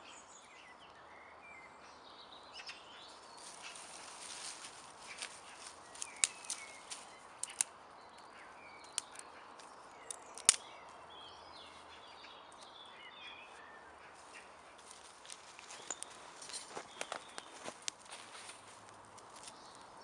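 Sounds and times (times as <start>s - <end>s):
small birds chirping: 0.0s - 20.0s
campfire crackling and popping: 5.0s - 7.7s, 8.8s - 10.7s, 15.2s - 19.9s.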